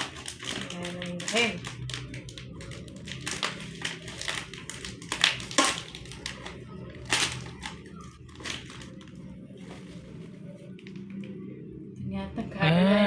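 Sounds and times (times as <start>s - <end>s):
plastic snack packet crinkling: 0.0s - 9.4s.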